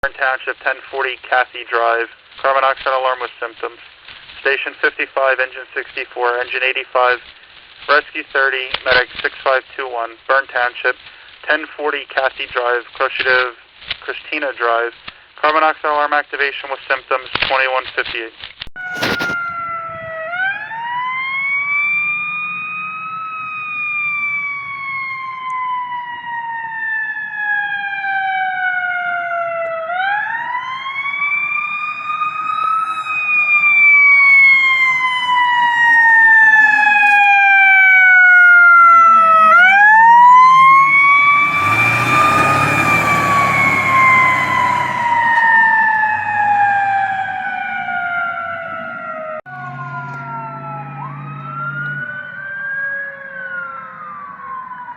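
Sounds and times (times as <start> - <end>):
emergency vehicle siren wailing: 18.8 - 54.9.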